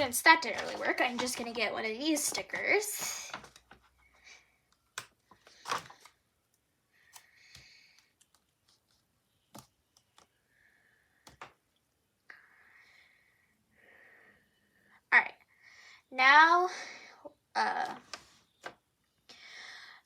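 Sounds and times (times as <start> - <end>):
soft paper rustles: 0.0 - 6.2, 7.0 - 10.4
small clicks and taps: 4.7 - 10.4, 11.2 - 12.0.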